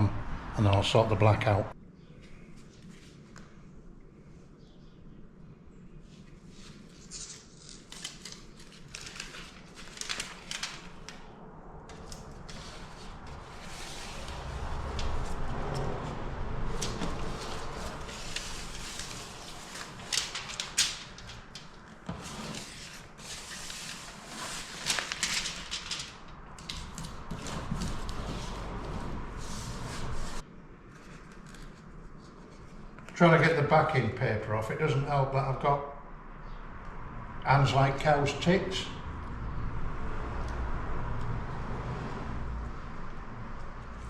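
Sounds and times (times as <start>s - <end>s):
foil tape crinkling: 6.9s - 11.3s, 16.8s - 28.2s.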